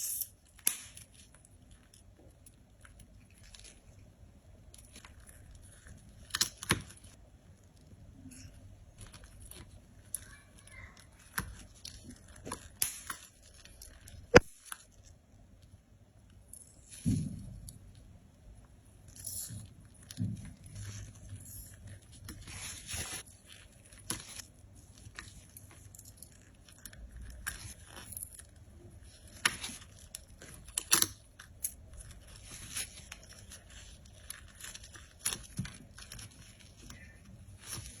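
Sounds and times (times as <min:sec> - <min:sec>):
squeeze toy crunching and crackling: 0:19.1 - 0:38.0.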